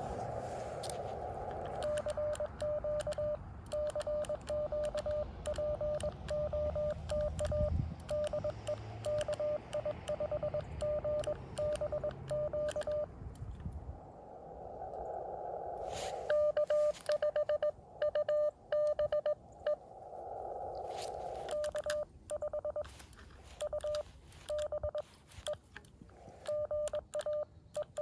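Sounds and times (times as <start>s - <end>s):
radio receiver hiss: 0.0s - 3.2s
keying clicks: 1.5s - 13.7s, 21.4s - 28.0s
morse code tone: 1.8s - 13.1s, 16.3s - 19.8s, 21.5s - 23.0s, 23.6s - 25.6s, 26.4s - 28.0s.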